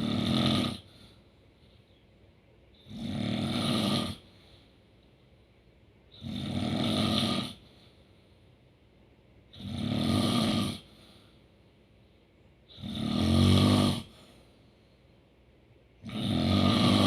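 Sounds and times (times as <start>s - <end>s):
person snoring: 0.0s - 0.9s, 2.8s - 4.3s, 6.2s - 7.6s, 9.6s - 10.9s, 12.7s - 14.3s, 16.0s - 17.0s.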